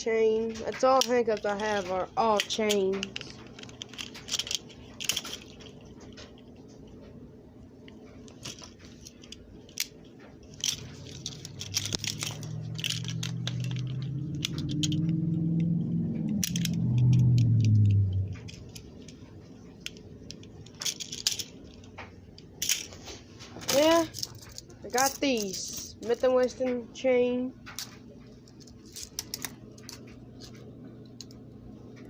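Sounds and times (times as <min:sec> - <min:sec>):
low hum: 0:00.0 - 0:32.0
handcuffs clinking: 0:02.4 - 0:06.4, 0:08.4 - 0:15.4, 0:16.4 - 0:19.2, 0:19.8 - 0:21.8, 0:28.5 - 0:30.0.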